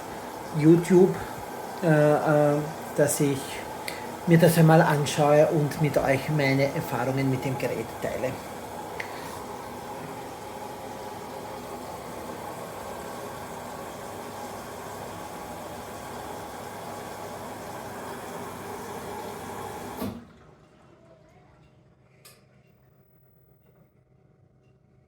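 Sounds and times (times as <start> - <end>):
washing machine running: 0.0 - 23.0.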